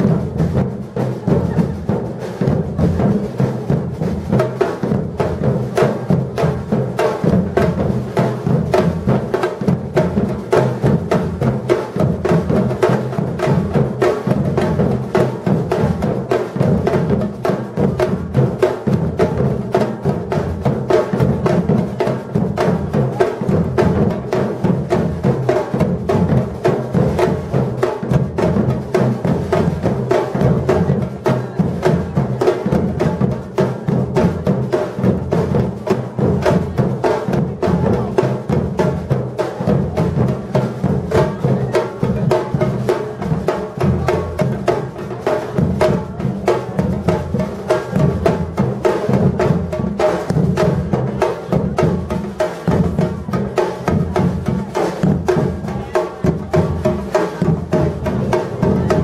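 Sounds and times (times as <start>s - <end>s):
snare and hand percussion: 0.0s - 59.0s.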